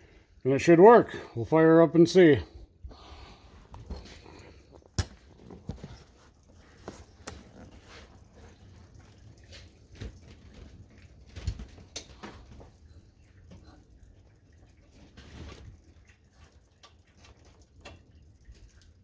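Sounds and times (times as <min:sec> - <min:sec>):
small clicks and taps: 0:08.9 - 0:13.8, 0:16.4 - 0:19.0.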